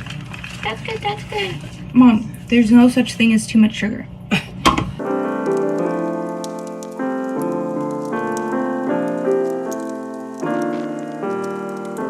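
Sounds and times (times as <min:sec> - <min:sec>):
background piano music: 0:05.0 - 0:12.0.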